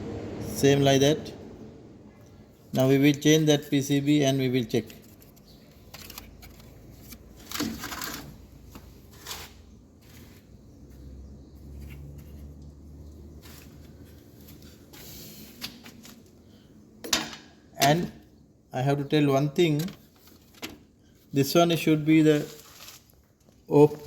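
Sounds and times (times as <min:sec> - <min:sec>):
handling plastic parts: 0:04.6 - 0:10.6.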